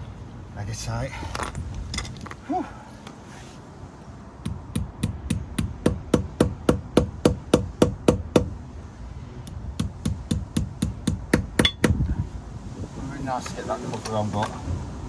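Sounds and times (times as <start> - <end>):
hammer striking metal: 4.4 - 8.6, 9.5 - 12.0.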